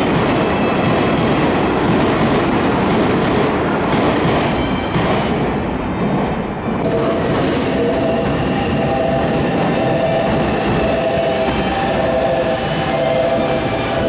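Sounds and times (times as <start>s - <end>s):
electric train rumbling past: 0.0s - 14.0s.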